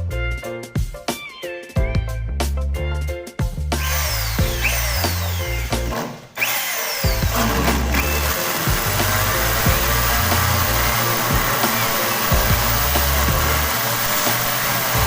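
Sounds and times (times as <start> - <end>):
background music with bass line: 0.0 - 6.0, 7.1 - 15.0.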